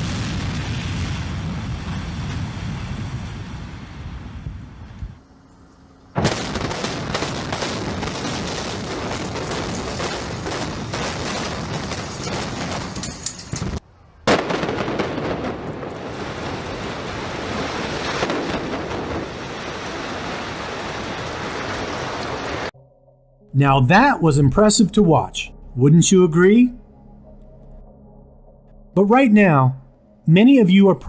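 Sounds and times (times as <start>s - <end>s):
building collapsing with rumbling roar: 6.2s - 22.7s
debris crackling: 6.2s - 22.7s.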